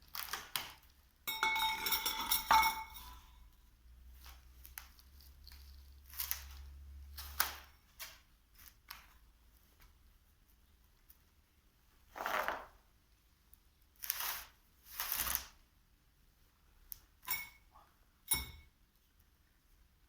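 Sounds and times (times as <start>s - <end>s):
sharp metallic clinks: 1.3s - 3.2s, 18.3s - 18.7s
scraping or rustling: 12.1s - 12.8s.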